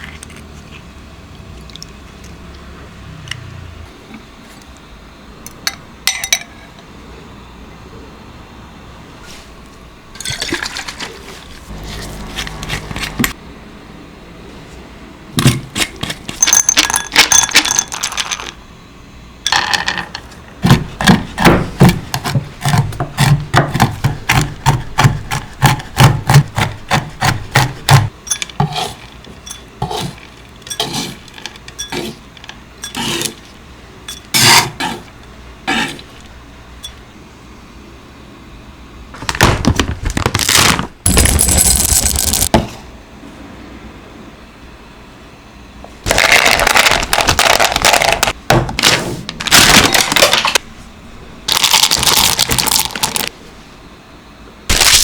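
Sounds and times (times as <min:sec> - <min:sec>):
utensil scraping a mixing bowl: 0:10.8 - 0:13.4, 0:20.6 - 0:36.3.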